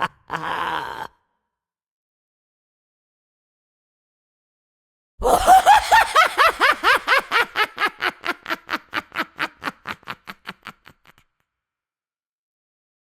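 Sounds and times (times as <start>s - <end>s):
woman laughing villainously: 5.2s - 11.3s.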